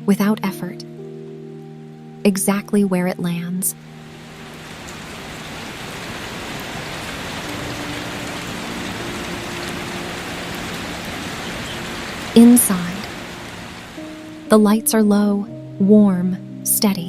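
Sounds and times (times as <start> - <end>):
soft background music: 0.0 - 17.0
steady rain: 3.7 - 14.7.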